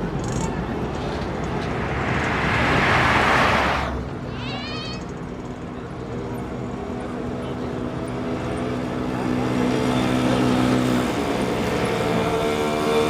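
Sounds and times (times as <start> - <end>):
low engine-like hum: 0.0 - 7.8.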